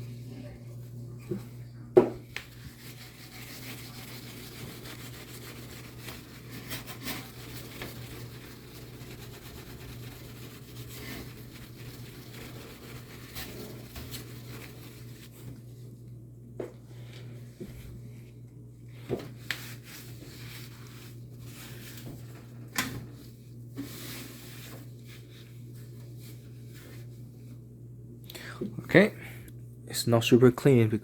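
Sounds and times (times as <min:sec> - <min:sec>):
steel wool scrubbing glass: 0:02.5 - 0:15.4.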